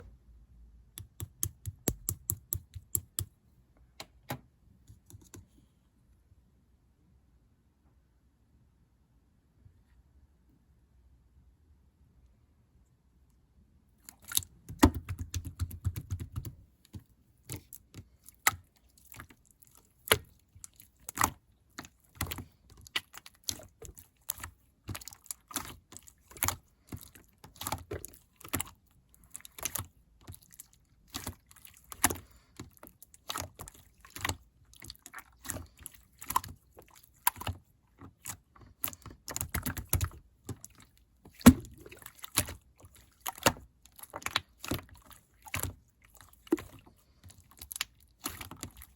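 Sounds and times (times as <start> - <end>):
slime squished by hand clicking: 0.9 - 3.3.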